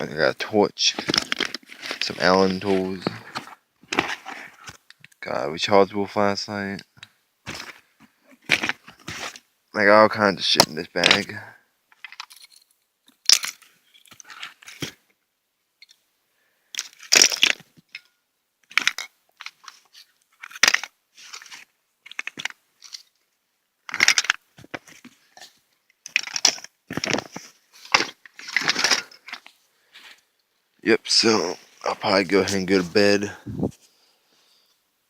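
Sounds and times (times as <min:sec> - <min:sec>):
bag crinkling and rustling: 0:00.9 - 0:04.8.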